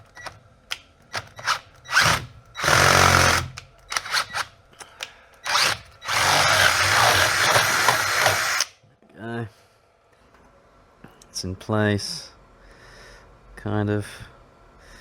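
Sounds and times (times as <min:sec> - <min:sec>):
power drill running: 0:01.4 - 0:04.5, 0:05.4 - 0:08.7.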